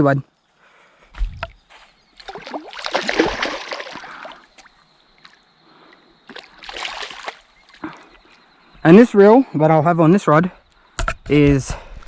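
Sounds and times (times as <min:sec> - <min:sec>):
water splashing: 0:02.2 - 0:04.8, 0:06.3 - 0:08.2.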